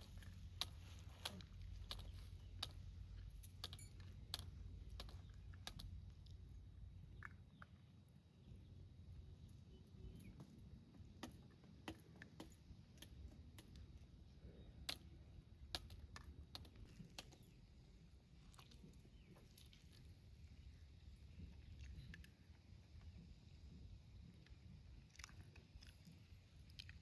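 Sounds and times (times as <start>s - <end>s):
light clicks and taps: 0.0s - 6.4s, 14.8s - 17.6s
low steady rumble: 0.0s - 27.0s.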